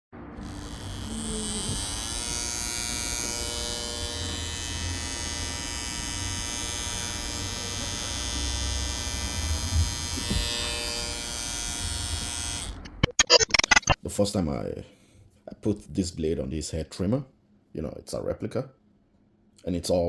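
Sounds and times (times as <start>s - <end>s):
electric hair trimmer buzzing: 0.2s - 14.0s.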